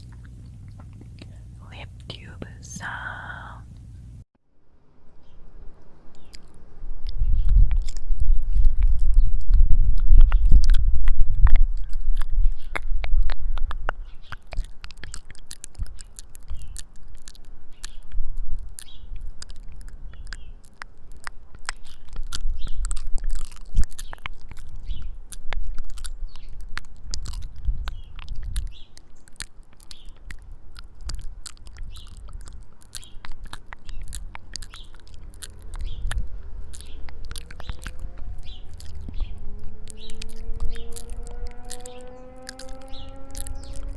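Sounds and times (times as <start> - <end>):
tongue clicks: 0.0 - 4.1, 6.1 - 43.9
wet lip smacks: 0.0 - 4.1, 6.1 - 43.9
low rumble: 5.0 - 28.8, 30.1 - 43.9
birds chirping: 5.1 - 10.7, 11.8 - 43.9
faint rising wail: 37.9 - 43.9.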